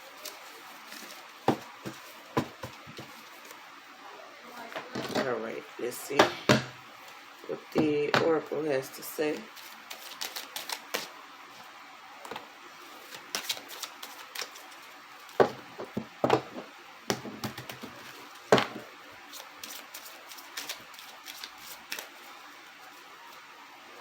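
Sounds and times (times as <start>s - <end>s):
cards being shuffled: 0.1s - 3.6s, 9.3s - 11.1s, 12.3s - 15.4s, 17.4s - 22.4s.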